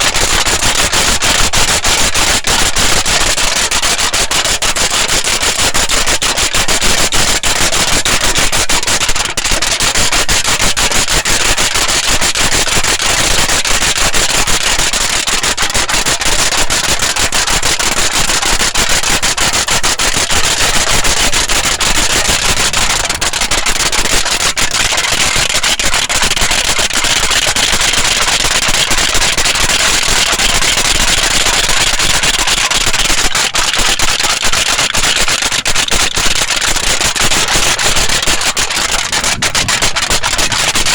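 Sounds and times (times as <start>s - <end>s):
aluminium foil crinkling: 28.9s - 40.9s.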